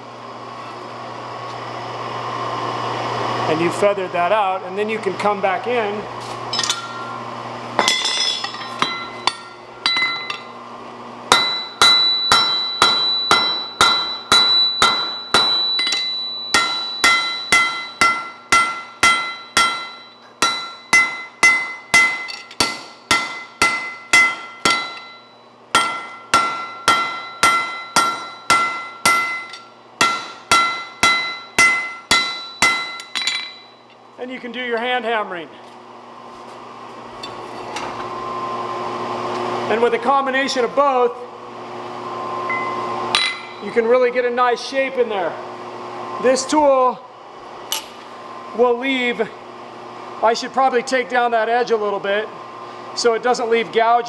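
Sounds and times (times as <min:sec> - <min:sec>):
hammer striking steel on anvil: 0:06.5 - 0:07.2, 0:07.8 - 0:10.6, 0:11.3 - 0:33.8, 0:42.5 - 0:43.8.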